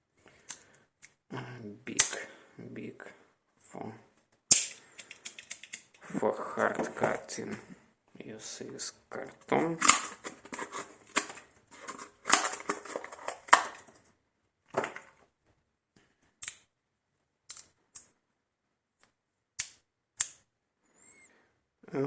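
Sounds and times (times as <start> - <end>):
sharp snaps: 1.9 - 2.3, 4.5 - 6.0, 16.4 - 16.7, 17.5 - 18.1, 19.0 - 20.5
blade cutting cardboard: 9.8 - 13.8.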